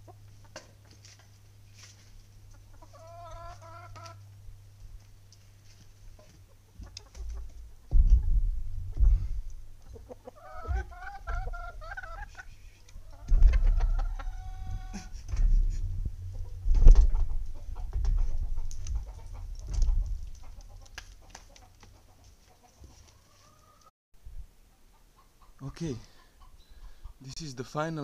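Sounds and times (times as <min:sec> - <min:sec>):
chickens clucking: 0:00.0 - 0:04.4, 0:05.4 - 0:23.9, 0:24.6 - 0:27.4
loud low rumbling: 0:07.9 - 0:09.8, 0:13.0 - 0:20.7
scattered knocks: 0:13.2 - 0:14.2.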